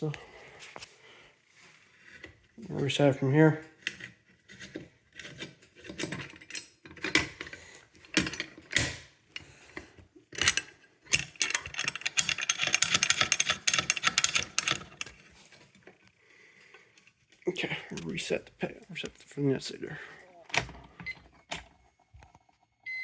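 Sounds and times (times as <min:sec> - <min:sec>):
rapid ratchet-like rattling: 0:10.4 - 0:15.1
alarm hardware clicking and knocking: 0:10.4 - 0:15.2.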